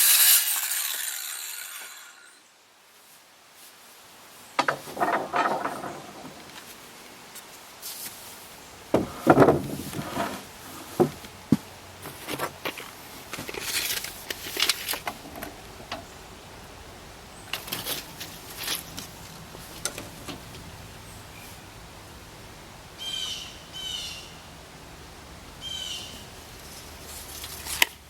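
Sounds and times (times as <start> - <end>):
rustling: 2.9 - 16.1, 17.5 - 20.7, 26.3 - 28.0
knocks and clatter: 4.6 - 6.7, 8.9 - 10.2.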